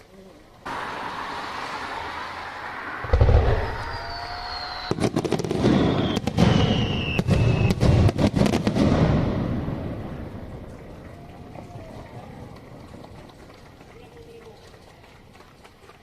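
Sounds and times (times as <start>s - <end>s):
falling firework whistles: 0.7s - 9.6s
firework cracks and bangs: 0.7s - 13.2s
deep firework boom: 3.0s - 10.8s.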